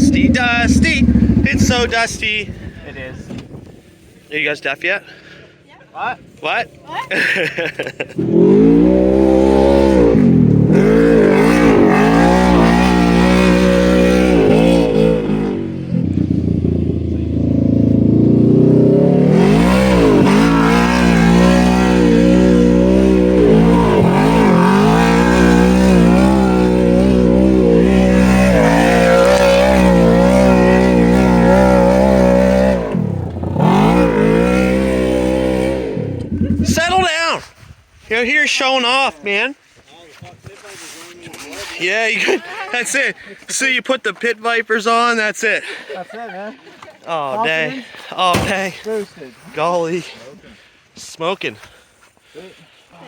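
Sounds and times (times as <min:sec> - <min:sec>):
off-road vehicle engine revving: 0:00.0 - 0:03.6, 0:08.0 - 0:37.0.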